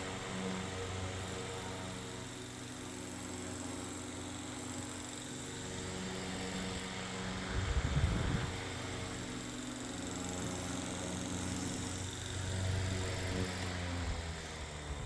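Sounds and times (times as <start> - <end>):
electric fan motor hum: 0.0 - 15.0.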